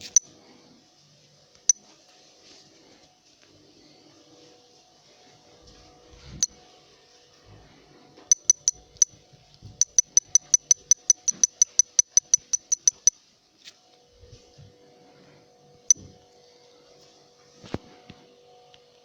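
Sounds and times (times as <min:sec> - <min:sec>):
sharp high smartphone clicks: 0:00.0 - 0:00.2, 0:08.3 - 0:09.1, 0:09.8 - 0:13.1.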